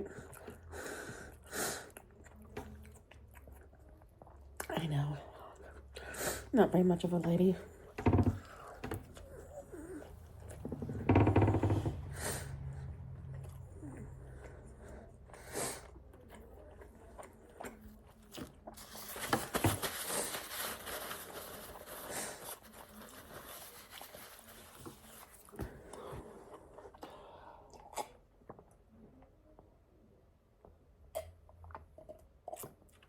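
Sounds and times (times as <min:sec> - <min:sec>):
chewing and crunching: 0:00.0 - 0:04.7, 0:12.8 - 0:29.2, 0:31.2 - 0:33.0.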